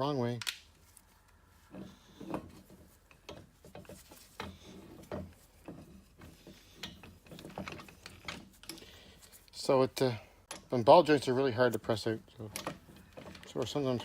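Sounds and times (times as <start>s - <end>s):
metal rubbing: 0.8s - 9.5s.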